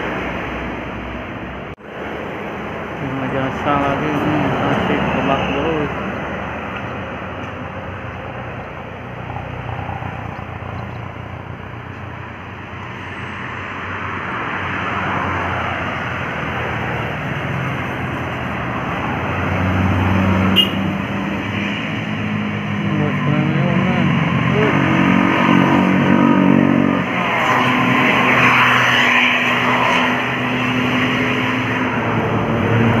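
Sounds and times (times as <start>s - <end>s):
heavy vehicle engine drone: 0.0s - 33.0s
road traffic passing: 0.0s - 33.0s.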